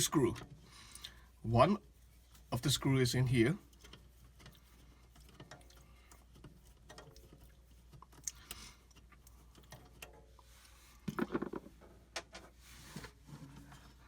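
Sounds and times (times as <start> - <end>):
rattle: 11.0 - 11.9.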